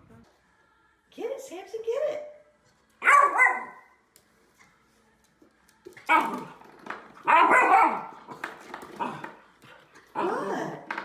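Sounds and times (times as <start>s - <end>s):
dog barking: 3.0s - 3.9s, 7.3s - 8.1s.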